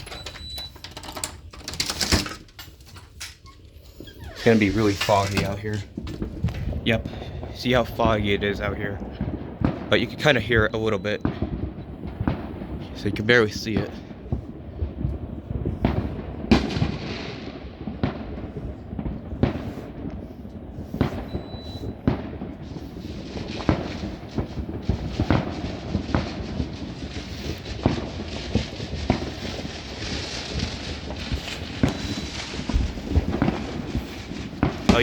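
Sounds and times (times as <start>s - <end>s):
fireworks bangs and pops: 0.0s - 35.0s
low rumble: 23.8s - 35.0s.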